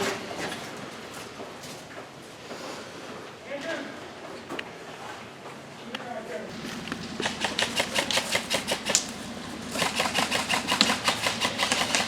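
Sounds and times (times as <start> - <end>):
airsoft gun rapid firing: 6.6 - 12.0.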